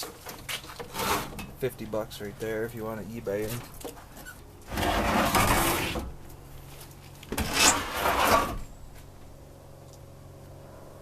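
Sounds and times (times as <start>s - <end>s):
wooden door scraping: 0.4s - 1.6s, 4.1s - 6.2s, 7.3s - 8.7s.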